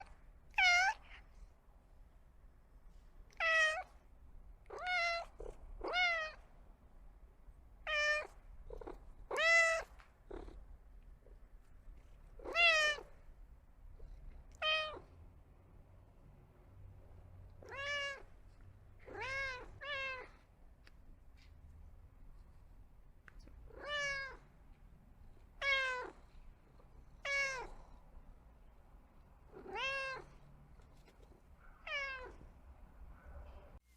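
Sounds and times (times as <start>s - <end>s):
cat meowing: 0.5s - 1.2s, 3.3s - 4.0s, 4.7s - 6.4s, 7.8s - 10.0s, 12.4s - 13.2s, 14.5s - 15.1s, 17.6s - 18.4s, 19.0s - 20.4s, 23.7s - 24.5s, 25.6s - 26.2s, 27.2s - 28.0s, 29.5s - 30.4s, 31.8s - 32.6s.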